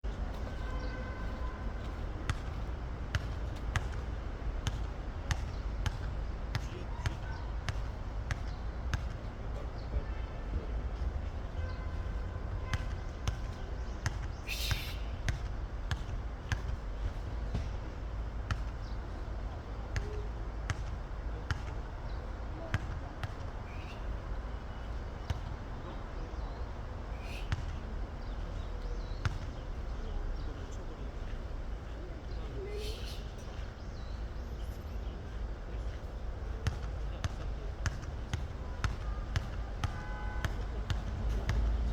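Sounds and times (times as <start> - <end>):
short hissing scrapes: 14.5 - 15.1.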